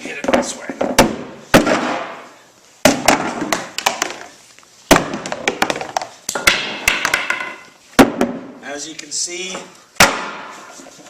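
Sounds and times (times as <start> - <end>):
loud strikes on plastic part: 0.9 - 2.2, 2.8 - 4.2, 10.0 - 10.6.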